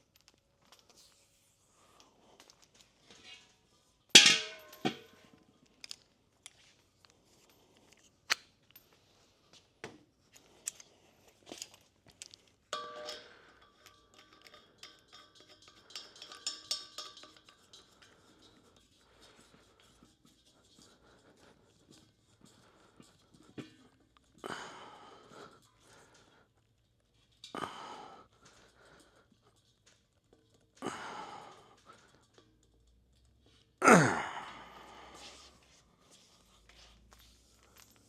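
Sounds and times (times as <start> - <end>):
metal clanking: 4.1 - 5.2, 12.7 - 18.0.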